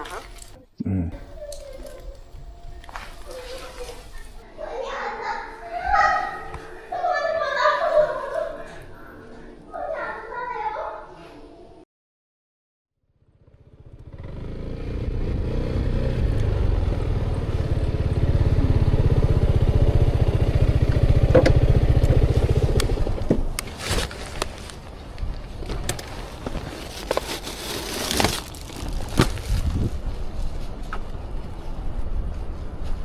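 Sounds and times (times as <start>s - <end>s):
motorcycle engine rumbling: 13.2s - 23.6s.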